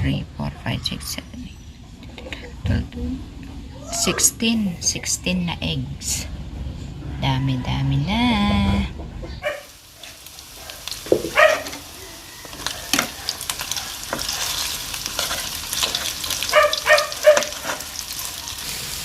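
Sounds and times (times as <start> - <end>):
potatoes sizzling in oil: 9.6 - 19.0
spatula knocking against pan: 11.0 - 11.4.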